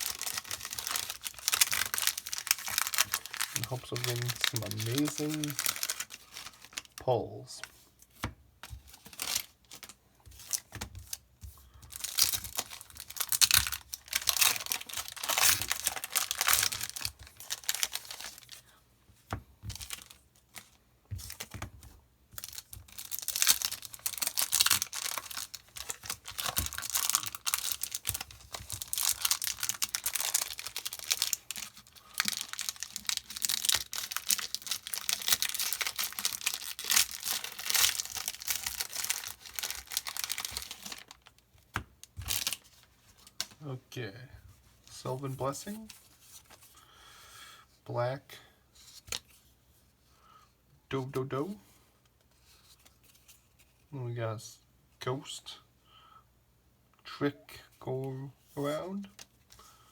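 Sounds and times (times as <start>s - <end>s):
foil wrappers tearing and crinkling: 0.0s - 7.0s, 11.9s - 18.6s, 22.4s - 41.3s, 42.2s - 42.7s.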